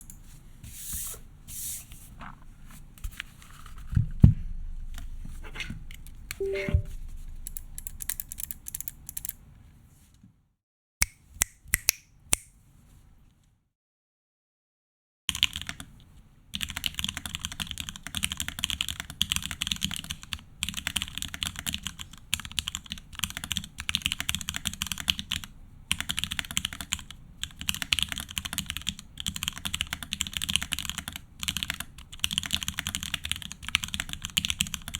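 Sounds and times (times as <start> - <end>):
fast mechanical keyboard typing: 15.3 - 15.9, 16.6 - 34.9.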